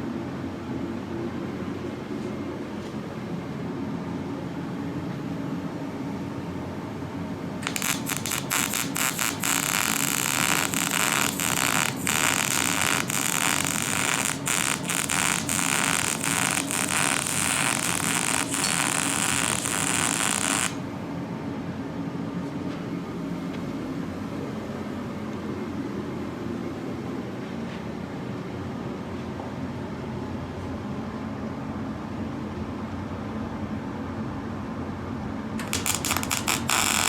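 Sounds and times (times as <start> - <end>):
welding arc crackling: 7.6 - 20.8, 35.6 - 37.0.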